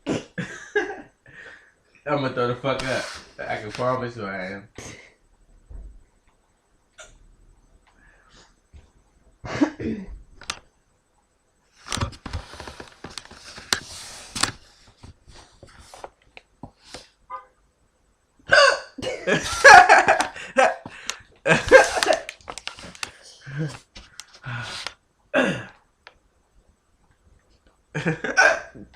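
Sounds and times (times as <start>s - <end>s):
person hiccuping: 18.5s - 19.3s, 28.2s - 28.9s.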